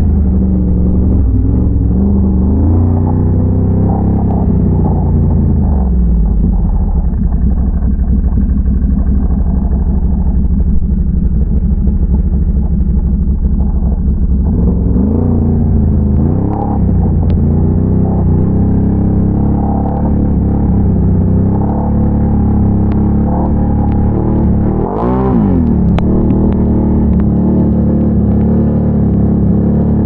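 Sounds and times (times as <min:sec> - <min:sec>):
atv engine revving: 0:00.0 - 0:30.0.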